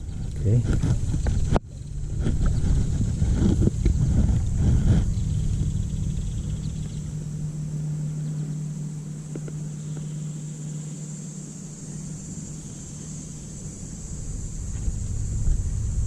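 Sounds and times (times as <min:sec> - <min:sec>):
steady high hiss: 0:00.0 - 0:16.0
steady low hum: 0:00.0 - 0:16.0.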